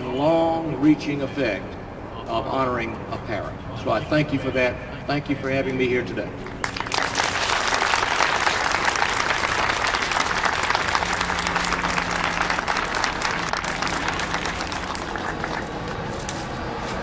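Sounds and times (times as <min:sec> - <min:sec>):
audience applauding: 0:06.4 - 0:15.9.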